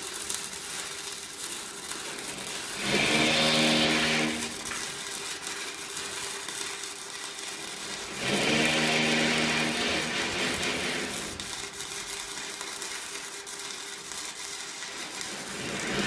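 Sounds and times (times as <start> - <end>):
electric power tool motor whine: 2.8 - 4.6, 8.2 - 11.0.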